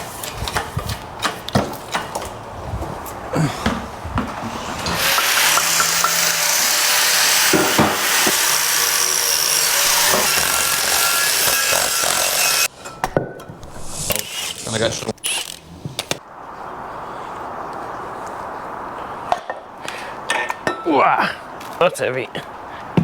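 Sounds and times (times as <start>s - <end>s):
handheld power tool running: 4.6s - 12.7s.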